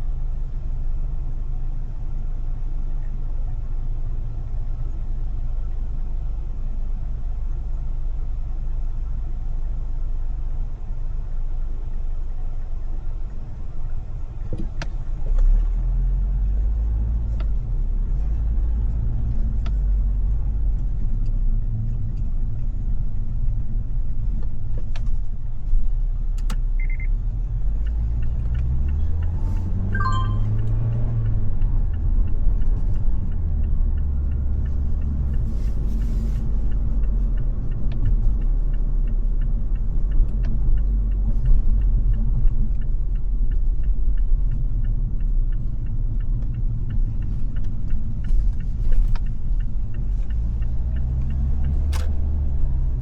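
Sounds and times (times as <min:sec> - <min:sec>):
car engine and road noise: 0:00.0 - 0:53.0
brief high beep: 0:26.8 - 0:27.1, 0:29.9 - 0:30.6.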